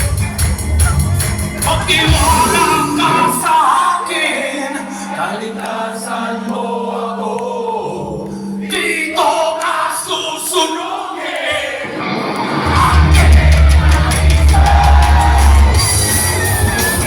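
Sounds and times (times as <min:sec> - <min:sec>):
drums: 0:00.0 - 0:03.6, 0:12.4 - 0:17.0
live rock band playing: 0:00.0 - 0:03.6, 0:11.9 - 0:17.0
man singing: 0:01.6 - 0:11.8, 0:12.6 - 0:16.8.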